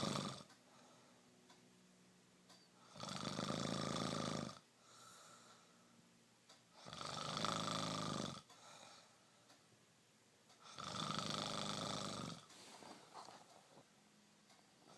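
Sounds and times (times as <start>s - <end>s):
person snoring: 0.0s - 0.5s, 2.8s - 4.6s, 6.8s - 8.5s, 10.6s - 12.5s
quiet breathing: 0.0s - 1.5s, 2.6s - 6.1s, 6.7s - 9.8s, 10.5s - 13.9s.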